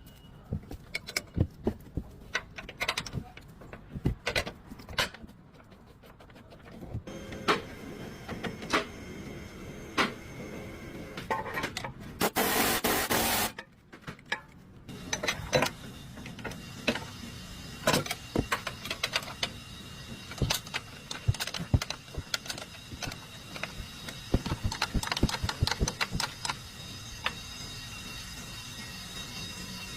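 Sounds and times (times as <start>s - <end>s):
loud hiss: 12.2s - 13.6s
metallic clicks of tools: 17.8s - 19.6s, 20.2s - 27.4s.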